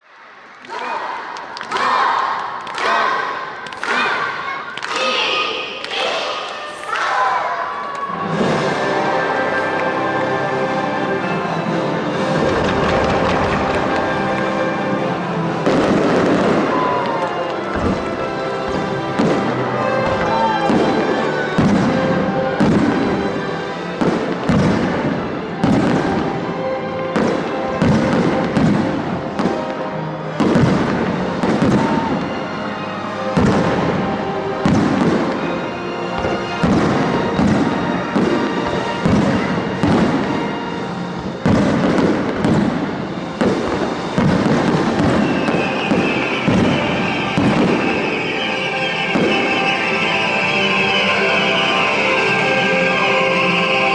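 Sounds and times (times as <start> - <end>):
music through loudspeakers: 8.2 - 53.9
fireworks bursting: 12.1 - 53.9
fireworks hissing and crackling: 12.3 - 26.4, 27.2 - 32.3, 36.2 - 53.8.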